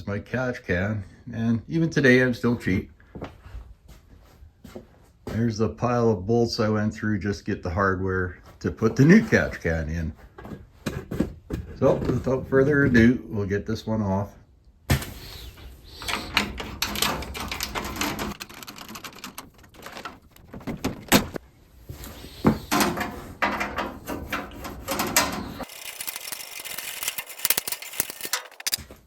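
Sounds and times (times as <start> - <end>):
hand tools clicking and clattering: 15.9 - 21.4, 22.4 - 28.9.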